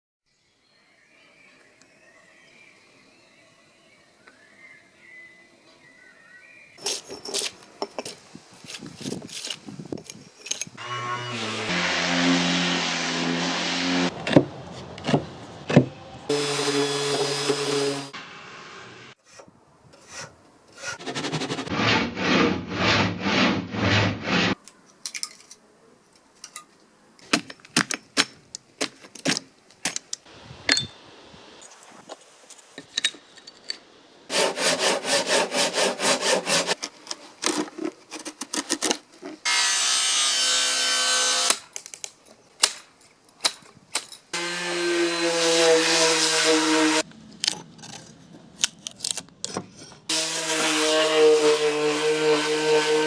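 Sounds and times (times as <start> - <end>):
saw rasping strokes: 20.0 - 24.6, 34.3 - 36.8
steady hiss: 30.3 - 32.8.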